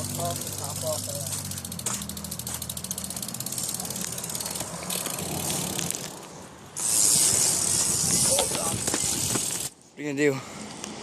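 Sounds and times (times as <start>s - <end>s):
bike hub ticking: 0.0s - 6.1s, 6.8s - 9.7s
loud hiss: 6.8s - 8.4s
tyre rolling noise: 6.8s - 9.7s.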